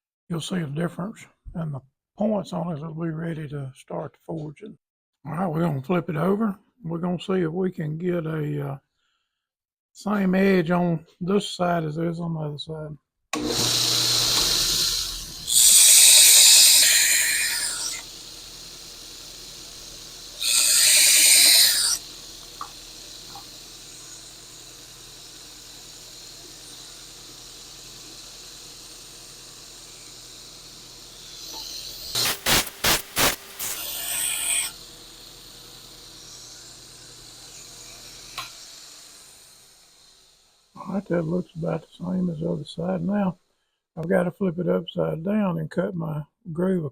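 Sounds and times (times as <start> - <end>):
steel blade grinding on belt: 13.4 - 40.7
belt sander humming: 13.4 - 43.1.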